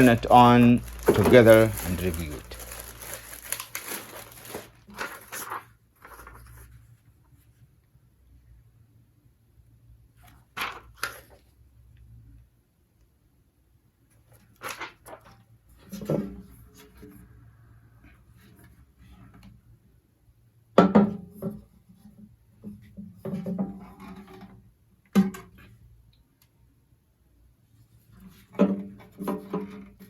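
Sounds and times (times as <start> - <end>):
knocks and clatters of handling: 0.8 - 6.4, 28.3 - 30.0.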